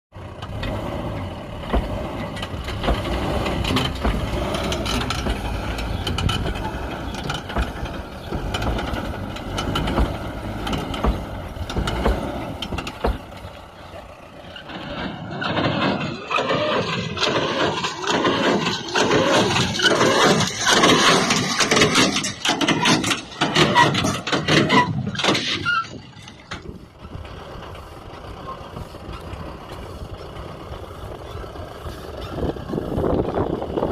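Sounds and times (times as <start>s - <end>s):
truck engine running under load: 0.1s - 33.9s.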